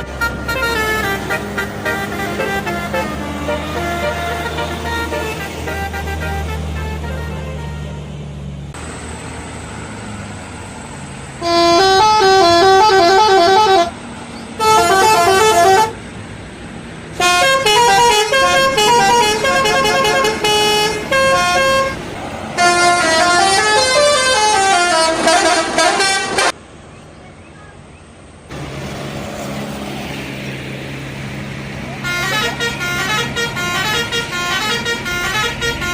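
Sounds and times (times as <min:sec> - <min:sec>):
bus air horn playing a tune: 0:00.0 - 0:08.2, 0:11.4 - 0:14.0, 0:14.6 - 0:16.0, 0:17.2 - 0:26.6, 0:32.0 - 0:35.9.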